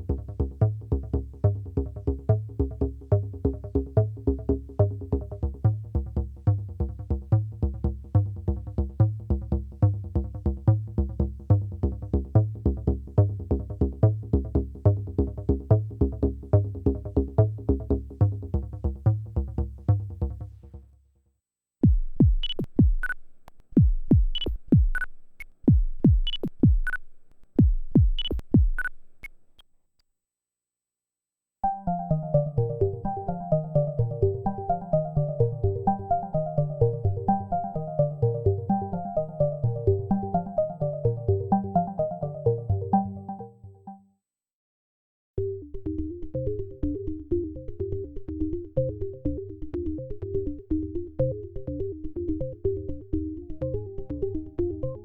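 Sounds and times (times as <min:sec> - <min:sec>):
drum machine hits falling in pitch: 0:21.8 - 0:23.2, 0:23.8 - 0:25.1, 0:25.7 - 0:27.0, 0:27.6 - 0:28.9
synthesizer bass pulses: 0:21.8 - 0:29.4
high clicks: 0:22.4 - 0:23.8, 0:24.4 - 0:25.6, 0:26.3 - 0:27.6, 0:28.2 - 0:29.7.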